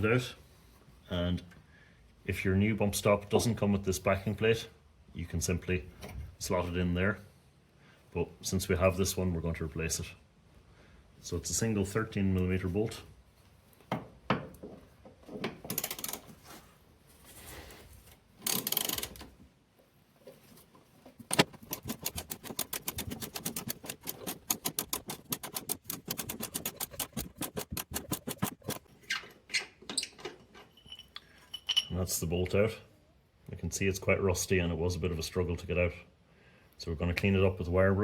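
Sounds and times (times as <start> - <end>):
ratchet wrench clicking: 15.7 - 16.2, 18.4 - 19.2.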